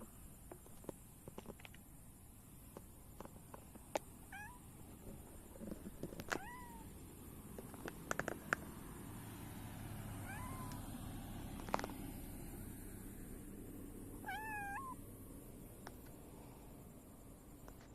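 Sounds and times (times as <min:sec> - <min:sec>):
cat meowing: 0:04.3 - 0:04.6, 0:06.3 - 0:06.9, 0:10.2 - 0:10.8, 0:14.2 - 0:15.0.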